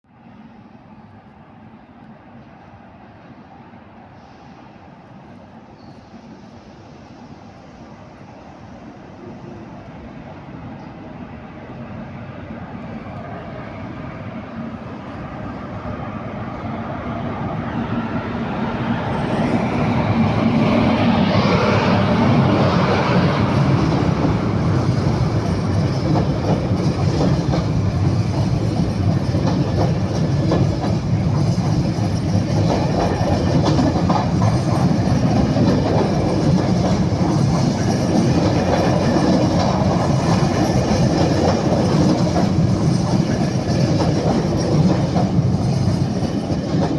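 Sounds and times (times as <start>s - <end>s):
train rumbling past: 0.1s - 46.9s
wheels clattering on rails: 23.2s - 46.9s.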